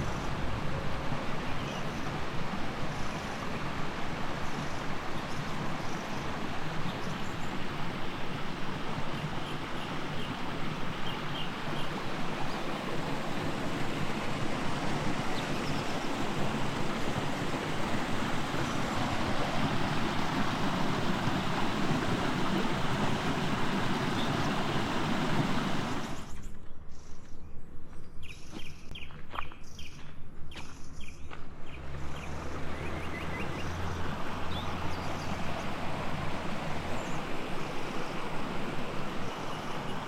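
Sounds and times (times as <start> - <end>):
small birds chirping: 9.2 - 19.2
steady rushing noise: 10.4 - 26.3, 32.3 - 40.0.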